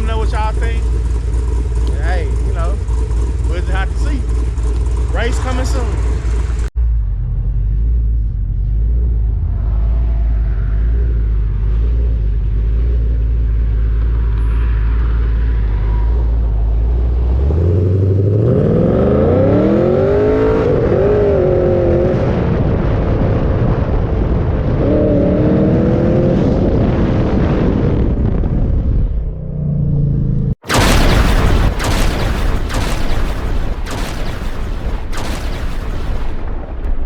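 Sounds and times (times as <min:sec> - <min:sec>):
car engine idling and revving: 0:00.0 - 0:27.3.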